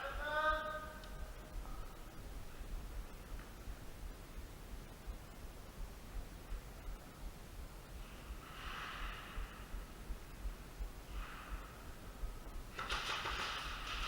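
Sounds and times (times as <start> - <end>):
person breathing: 8.0 - 12.6.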